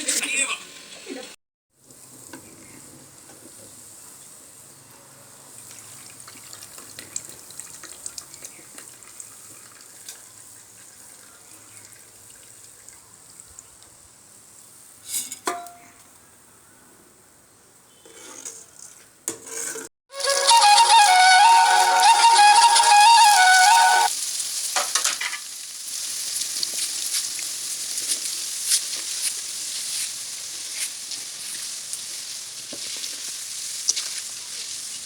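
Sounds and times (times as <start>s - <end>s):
crackles of frying: 0.0s - 16.3s, 17.9s - 35.0s
hot oil sizzling: 0.6s - 13.4s, 20.1s - 35.0s
metal utensil clinking on pan: 15.1s - 15.8s.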